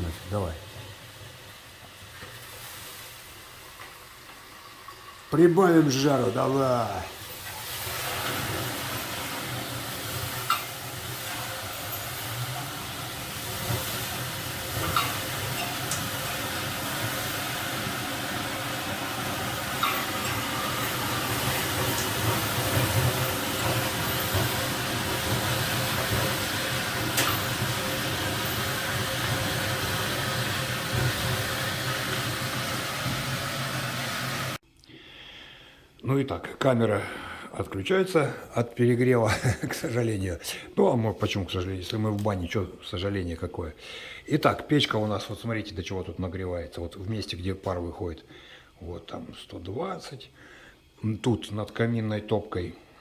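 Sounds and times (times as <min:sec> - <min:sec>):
steam hissing on hot stones: 0:00.0 - 0:34.6.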